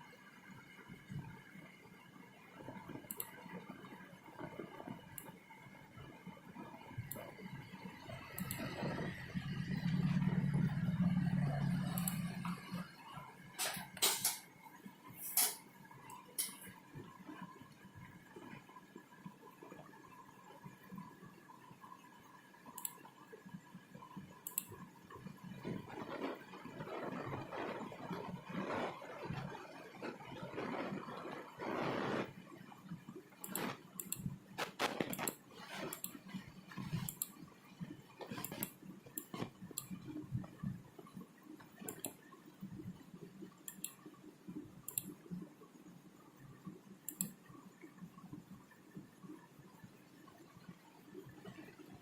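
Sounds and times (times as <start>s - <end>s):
faint electrical hum: 0.0s - 52.0s
faint low background noise: 0.0s - 52.0s
computer mouse clicking: 2.9s - 3.5s, 7.0s - 7.5s, 8.2s - 9.1s, 11.7s - 12.8s, 22.7s - 23.1s, 24.4s - 24.9s, 33.4s - 37.4s, 38.2s - 41.2s, 41.8s - 42.3s, 43.6s - 44.2s, 44.8s - 45.4s, 47.1s - 47.4s.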